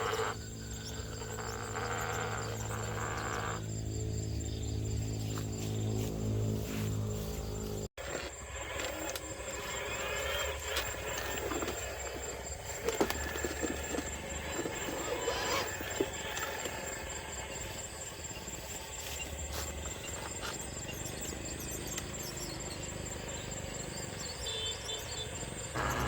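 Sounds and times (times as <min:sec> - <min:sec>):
model truck electric motor whining: 0:00.0 - 0:04.3, 0:07.8 - 0:26.0
low hum: 0:00.4 - 0:12.7, 0:25.8 - 0:26.0.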